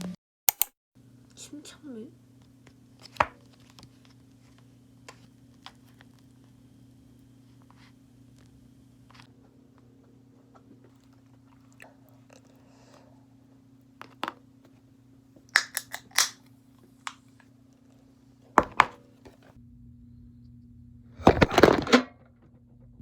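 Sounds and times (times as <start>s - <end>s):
steady low hum: 1.0s - 23.0s
chewing and crunching: 9.1s - 13.2s.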